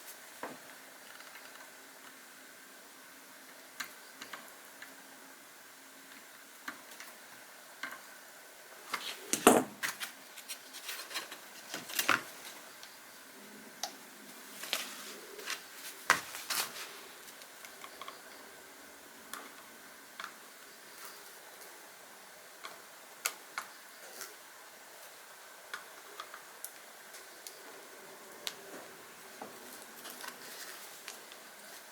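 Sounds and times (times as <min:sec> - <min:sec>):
tools and small parts handled: 0:08.9 - 0:12.6.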